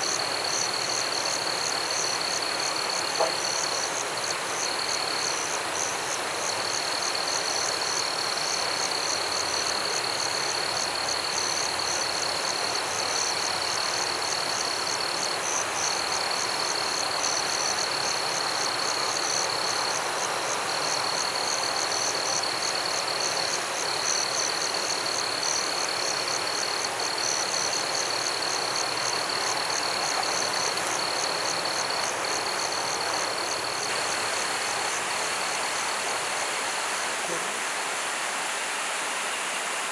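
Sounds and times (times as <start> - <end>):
frogs and insects trilling: 0.0 - 37.8
river rushing: 15.6 - 39.9.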